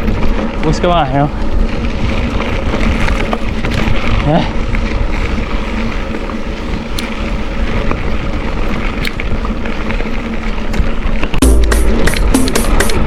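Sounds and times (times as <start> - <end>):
wind rushing over microphone: 0.0 - 13.0
faint ticks: 6.9 - 7.1.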